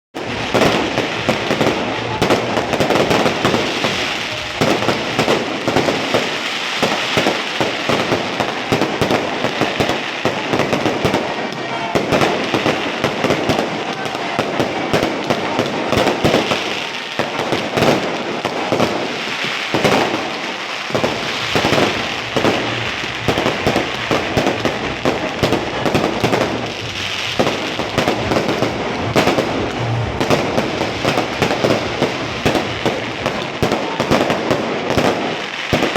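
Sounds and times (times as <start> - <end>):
fireworks crackling and banging: 0.1 - 35.9.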